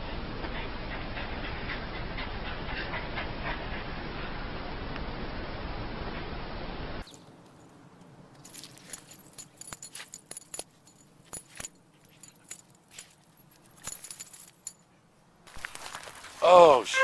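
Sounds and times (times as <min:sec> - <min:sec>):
small metal pieces jingling: 0:08.4 - 0:14.9.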